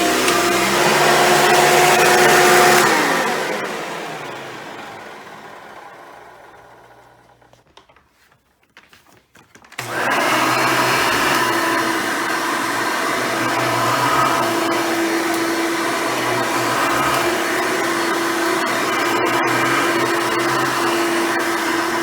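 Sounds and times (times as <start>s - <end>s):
vacuum cleaner motor whine: 0.0s - 7.6s, 9.8s - 22.0s.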